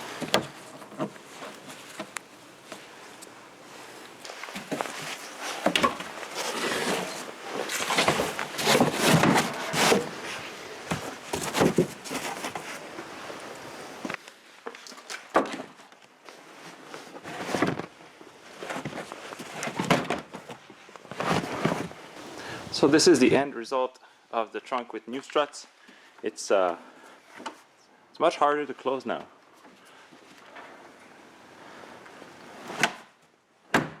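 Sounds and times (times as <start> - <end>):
plastic panels rustling and scraping: 0.0 - 14.2, 16.8 - 23.0.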